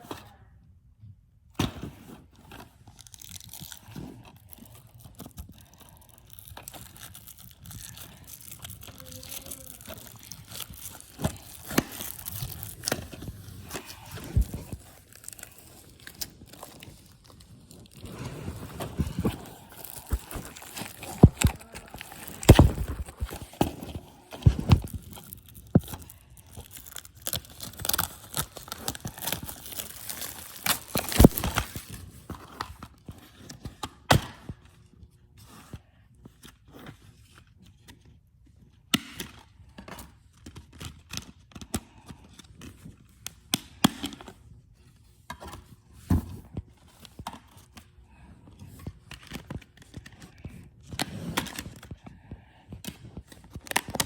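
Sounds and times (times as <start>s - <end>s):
packaging tearing and crinkling: 2.8s - 32.2s.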